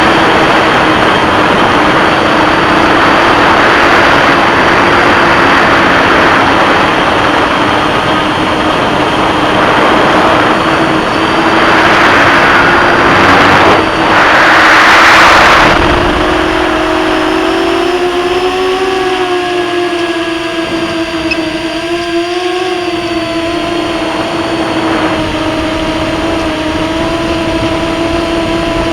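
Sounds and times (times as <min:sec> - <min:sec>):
rush of air: 0:00.0 - 0:21.0
drone motors whining: 0:00.0 - 0:28.9.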